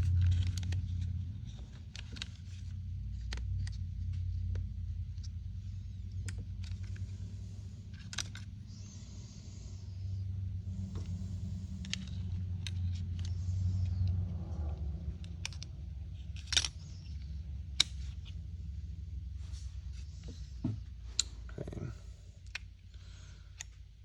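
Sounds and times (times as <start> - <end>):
clicks and rattles of small parts: 0.0 - 9.1, 10.7 - 18.4, 22.4 - 24.0
steady low hum: 0.0 - 24.0.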